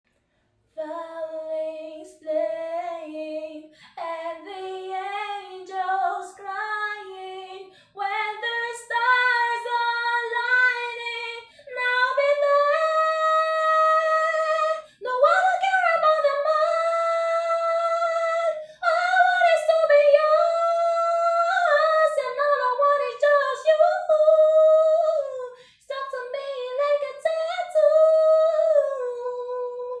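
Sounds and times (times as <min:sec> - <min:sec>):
woman singing unaccompanied: 0:00.8 - 0:30.0.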